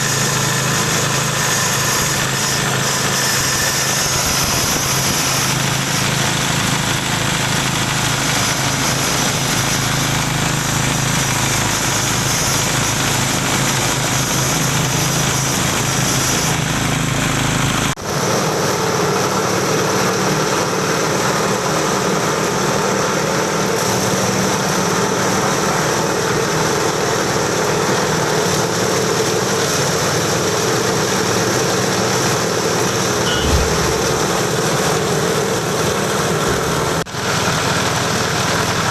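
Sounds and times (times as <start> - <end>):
grinding mill running: 0.0 - 38.9
short thump: 33.3 - 34.6.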